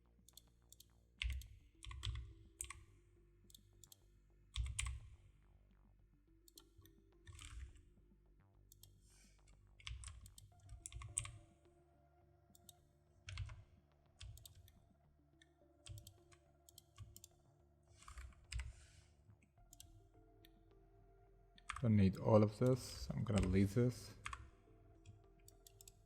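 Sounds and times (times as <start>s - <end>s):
keyboard keystrokes: 22.6s - 24.4s.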